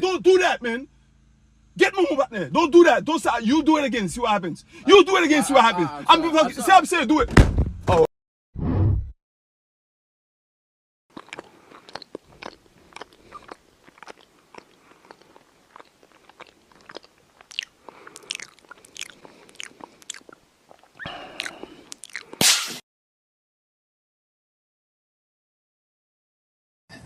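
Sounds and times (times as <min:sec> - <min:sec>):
close-up crunching: 0:11.1 - 0:22.6.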